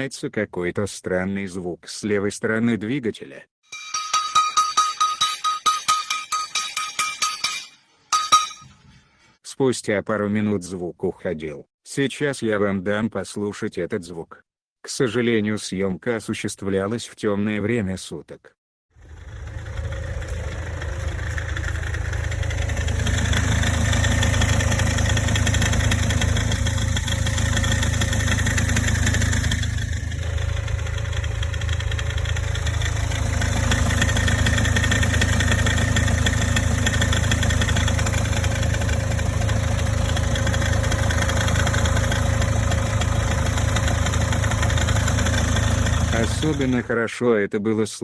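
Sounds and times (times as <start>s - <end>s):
car engine running: 19.0s - 46.9s.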